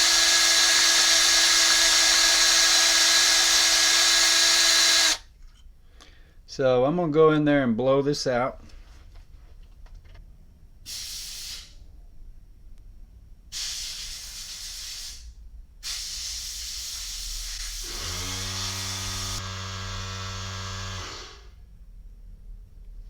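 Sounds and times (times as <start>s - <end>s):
compressed air hissing: 10.9s - 11.8s, 13.5s - 19.4s
low steady hum: 19.4s - 23.0s.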